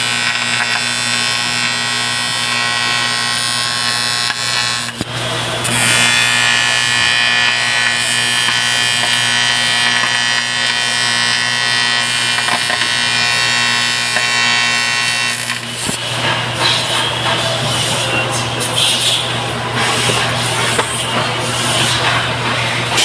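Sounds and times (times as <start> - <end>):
welding arc buzzing: 0.0 - 17.0.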